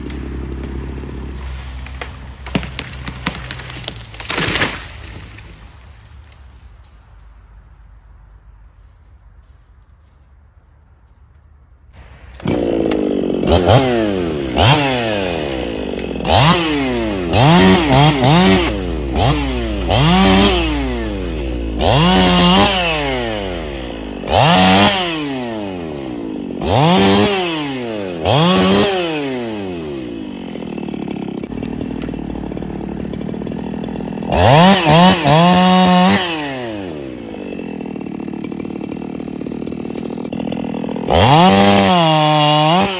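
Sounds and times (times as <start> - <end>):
chainsaw engine revving: 0.0 - 5.6, 12.0 - 42.9.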